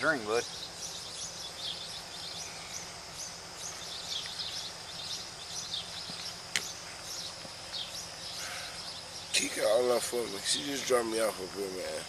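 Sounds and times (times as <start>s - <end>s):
birds chirping: 0.0s - 12.0s
steady background hiss: 0.0s - 12.0s
sharp click: 6.2s - 6.7s.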